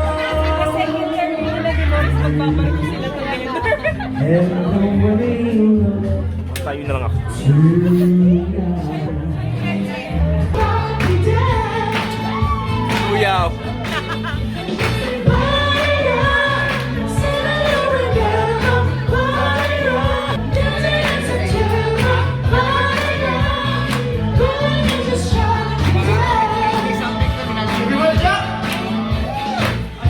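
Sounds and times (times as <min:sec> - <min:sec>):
person singing: 0:00.0 - 0:02.8, 0:10.4 - 0:13.6, 0:15.0 - 0:29.8
backing music with beat and bass: 0:10.2 - 0:30.0.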